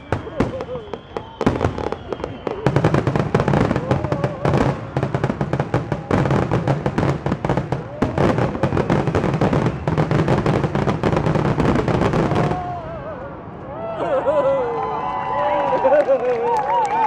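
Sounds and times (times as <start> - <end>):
fireworks bursting and crackling: 0.0 - 12.8.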